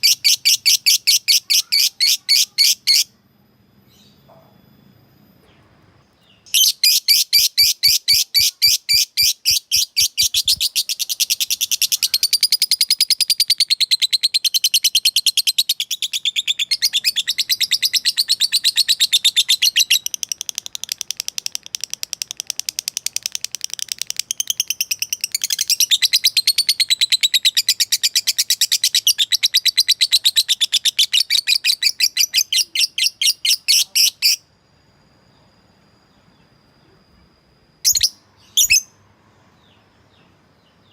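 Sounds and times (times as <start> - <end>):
lovebird shrill chirping: 0.0 - 3.2, 6.2 - 34.5, 37.8 - 39.0.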